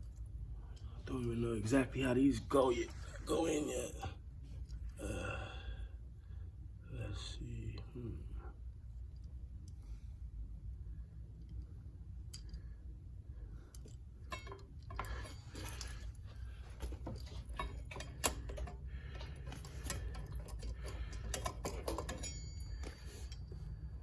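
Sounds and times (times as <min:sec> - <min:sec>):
steady low rumble: 0:00.0 - 0:21.3
metal parts clicking and rattling: 0:13.6 - 0:24.0.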